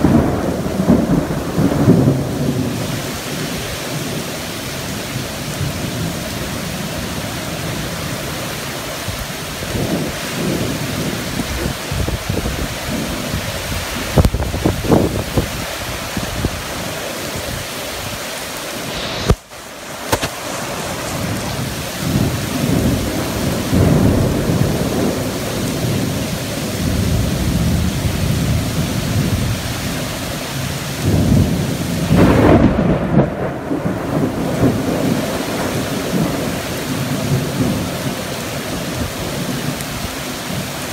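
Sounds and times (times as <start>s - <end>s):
heavy rain pouring: 0.0s - 40.9s
thunder rumbling: 0.0s - 40.9s
sharp crack: 18.9s - 21.4s.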